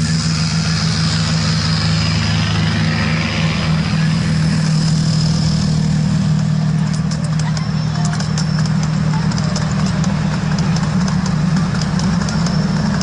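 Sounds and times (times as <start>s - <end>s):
engine low hum with high whine: 0.0s - 13.0s.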